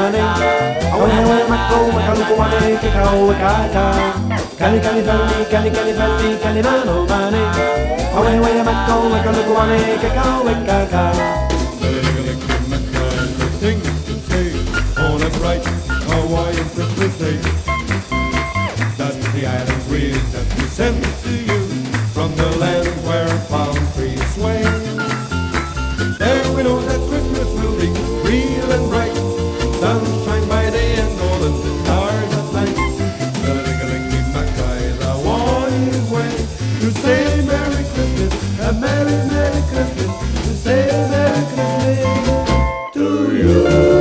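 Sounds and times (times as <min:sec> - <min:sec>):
steady bass beat: 0:00.0 - 0:42.7
hawaiian-style band music: 0:00.0 - 0:44.0
gliding lead melody: 0:42.7 - 0:44.0.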